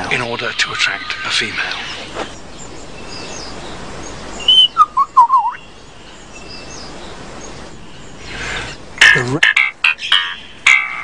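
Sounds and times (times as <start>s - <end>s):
forest background: 0.0s - 11.0s
bird singing whistled notes: 1.9s - 8.3s.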